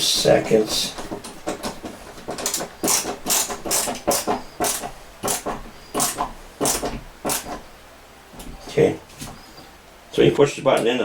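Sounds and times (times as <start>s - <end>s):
screwdriver rasping clicks: 1.5s - 7.6s.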